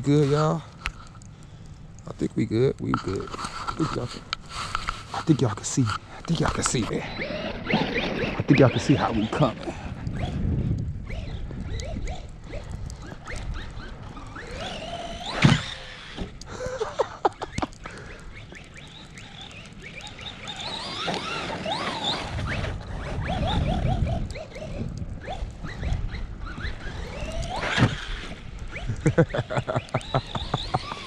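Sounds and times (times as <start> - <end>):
low wind rumble: 0.0 - 31.0
rc truck electric motor whine: 4.6 - 16.5, 17.2 - 31.0
clicks: 17.2 - 23.4.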